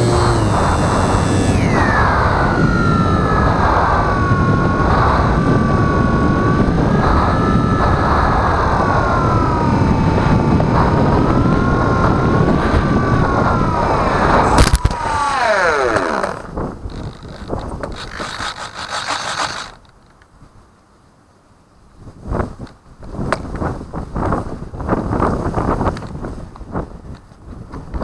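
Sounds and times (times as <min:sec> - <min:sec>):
model plane motor whining: 0:00.0 - 0:20.0
wind rumbling on microphone: 0:00.0 - 0:20.7, 0:21.9 - 0:28.0.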